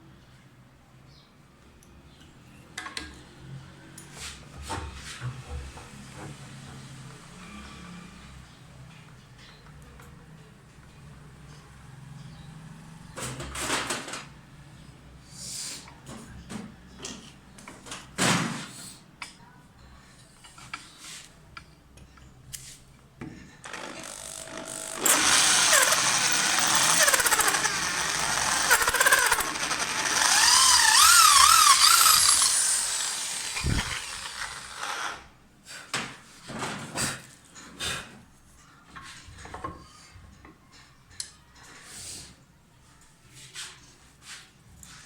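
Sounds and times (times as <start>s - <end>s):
mini grinder whining: 23.6s - 35.3s.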